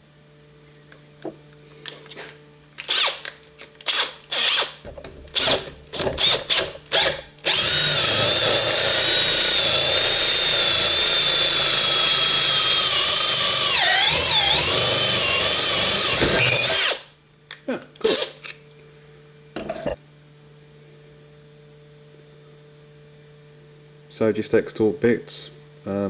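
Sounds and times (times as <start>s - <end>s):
power tool grinding with high whine: 3.8s - 17.1s.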